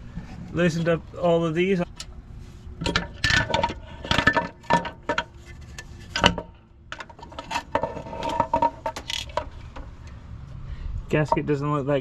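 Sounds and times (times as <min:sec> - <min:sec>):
metal tools clinking and clattering: 0:02.8 - 0:09.8.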